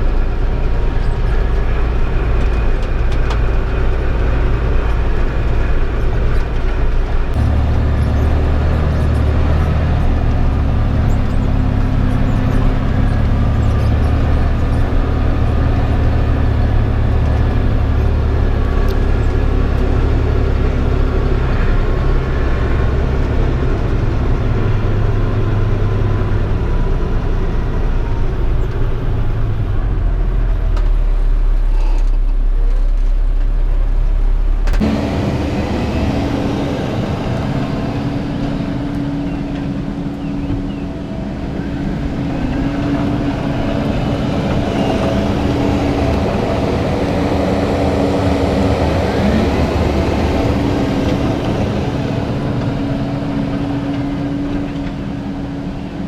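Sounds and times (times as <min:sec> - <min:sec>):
vehicle engine deep rumble: 0:00.0 - 0:56.0
steady pitched hum: 0:32.3 - 0:56.0.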